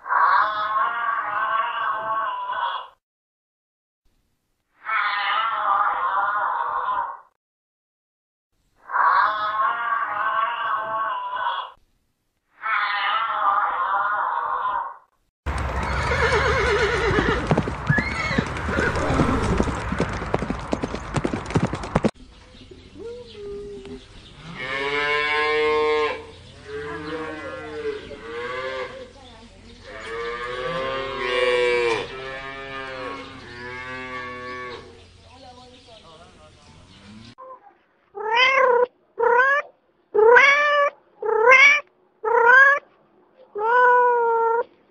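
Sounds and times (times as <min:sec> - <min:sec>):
cattle mooing: 0:24.4 - 0:29.0, 0:29.9 - 0:34.9.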